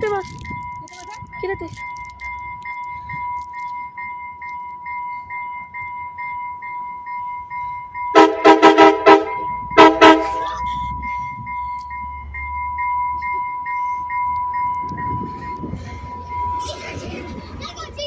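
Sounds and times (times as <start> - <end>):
train horn toots: 8.1 - 10.4.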